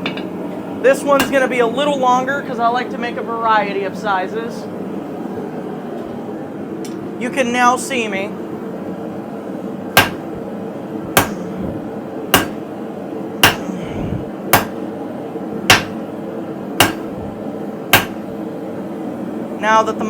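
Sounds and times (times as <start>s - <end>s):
hammer striking metal: 0.0s - 0.3s, 10.0s - 10.3s, 11.2s - 11.4s, 12.3s - 12.6s, 13.4s - 13.7s, 14.6s - 14.8s, 15.7s - 16.0s, 16.8s - 17.1s, 17.9s - 18.2s
steady hum: 0.0s - 20.0s.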